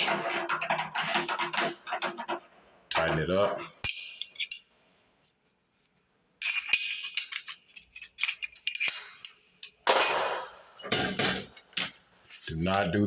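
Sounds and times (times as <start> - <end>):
wrench clinking on metal: 3.8 - 4.8, 6.4 - 11.7.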